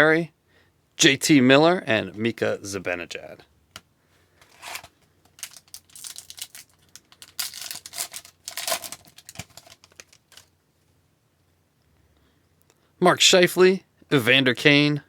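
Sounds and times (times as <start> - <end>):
cards rustling: 4.4 - 10.5
foil wrapper tearing and crinkling: 4.4 - 10.5.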